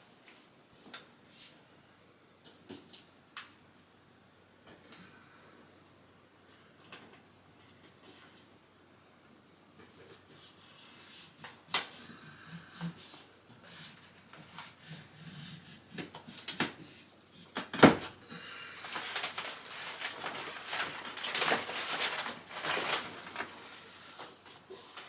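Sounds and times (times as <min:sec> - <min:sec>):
wallpaper rustling and scraping: 0:07.6 - 0:08.6, 0:09.8 - 0:17.5, 0:18.4 - 0:25.0.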